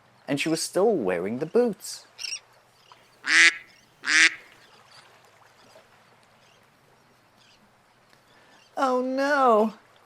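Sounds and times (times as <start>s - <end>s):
duck quacking: 3.3s - 4.4s.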